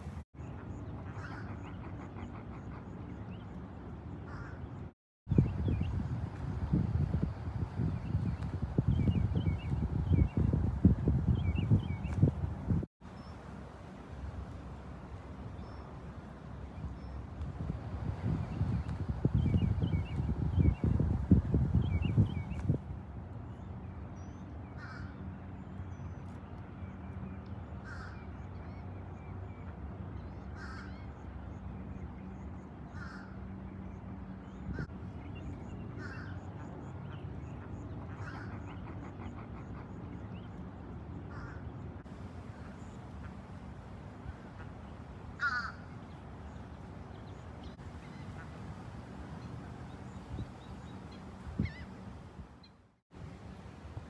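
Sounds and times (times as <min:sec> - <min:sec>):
bird harsh calls: 0:45.4 - 0:45.9.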